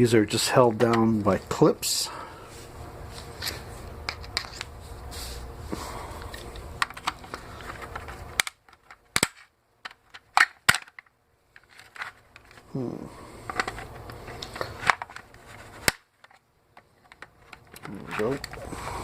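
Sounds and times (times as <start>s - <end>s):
plastic clips clicking and snapping: 8.3s - 11.1s.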